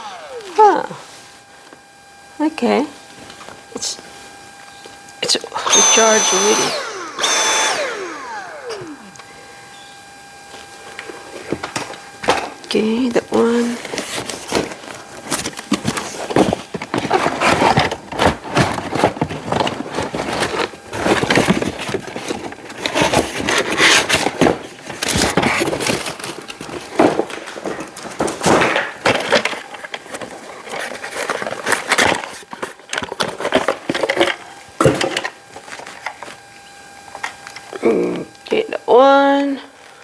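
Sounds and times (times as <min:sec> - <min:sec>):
packaging crackling and rustling: 0:13.1 - 0:36.5.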